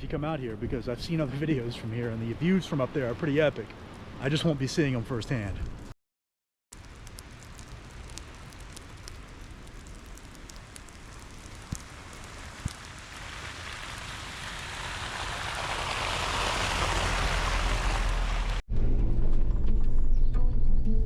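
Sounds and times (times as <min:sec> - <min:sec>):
rain and tyres in slush: 0:06.7 - 0:18.6
low engine rumble: 0:06.8 - 0:19.7.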